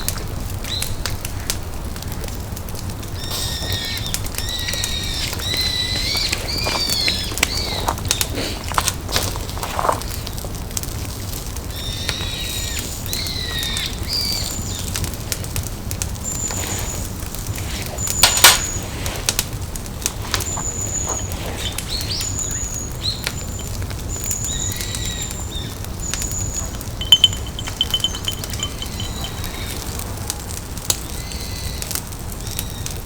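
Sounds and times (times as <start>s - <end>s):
small crackles: 0.0s - 13.0s, 14.8s - 25.4s, 26.1s - 29.8s
lower bird chirps: 26.3s - 29.8s
high thin bird calls: 27.0s - 29.6s.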